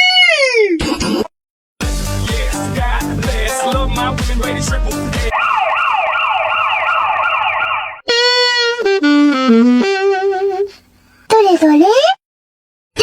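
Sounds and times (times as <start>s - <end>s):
dance beat: 1.8s - 5.4s
wavering siren-like electronic tone: 5.3s - 8.0s
reedy wind instrument melody: 8.0s - 10.8s.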